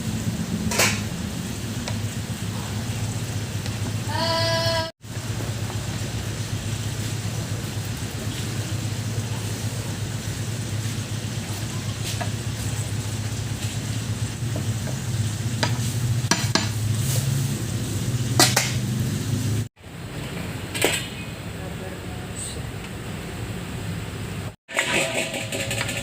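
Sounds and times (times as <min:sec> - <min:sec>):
food frying in a pot: 0:00.0 - 0:04.1, 0:05.0 - 0:19.9.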